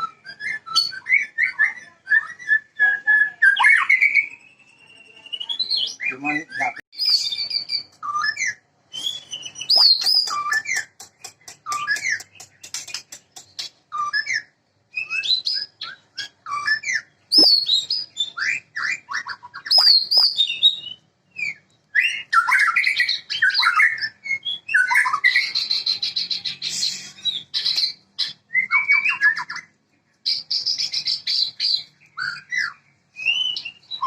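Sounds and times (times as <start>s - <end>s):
songbird whistled phrases: 0.0s - 34.0s
bird clicks: 9.8s - 13.8s.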